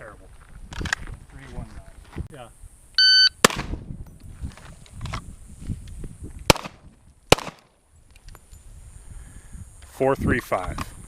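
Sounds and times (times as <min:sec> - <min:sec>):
gunshots: 0:03.4 - 0:03.8, 0:06.5 - 0:07.7.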